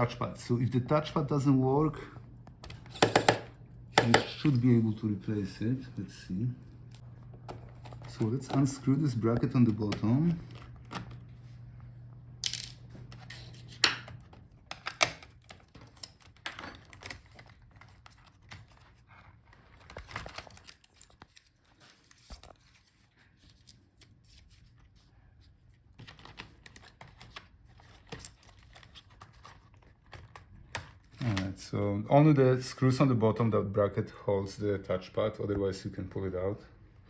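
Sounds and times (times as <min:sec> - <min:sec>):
screwdriver clicking and scraping: 0:02.7 - 0:04.5.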